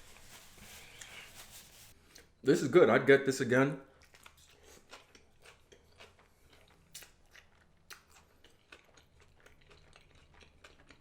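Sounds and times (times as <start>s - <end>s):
close-up chewing: 3.9s - 11.0s.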